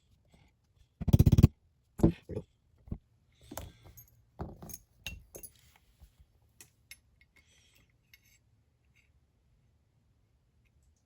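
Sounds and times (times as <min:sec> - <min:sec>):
small steel parts clinking: 0:03.5 - 0:05.8.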